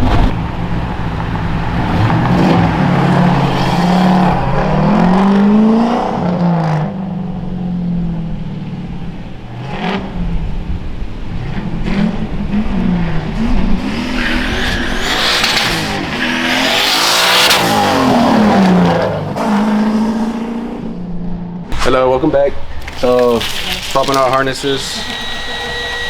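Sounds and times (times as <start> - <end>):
car engine revving: 0.0 - 26.0
tyre squeal: 2.5 - 4.5, 13.8 - 19.7, 22.5 - 26.0.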